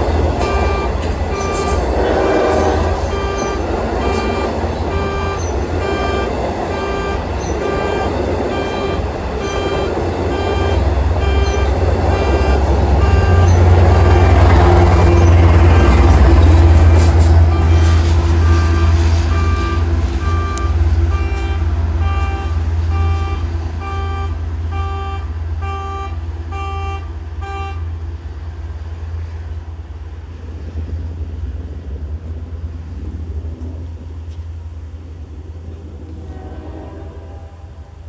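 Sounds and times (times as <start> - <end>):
diesel train rumbling: 0.0 - 38.0
electronic crossing bell ringing: 0.4 - 25.2.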